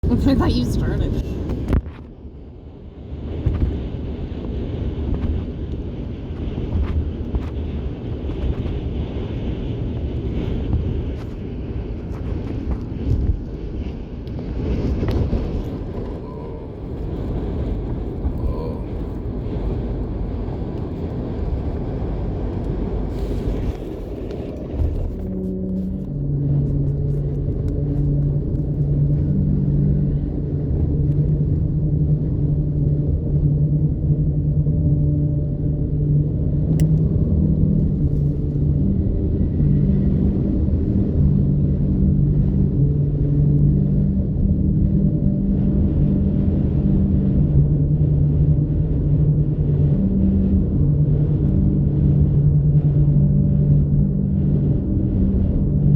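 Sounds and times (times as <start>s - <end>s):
steady low hum: 0.0s - 55.9s
wind and road rumble: 0.0s - 55.9s.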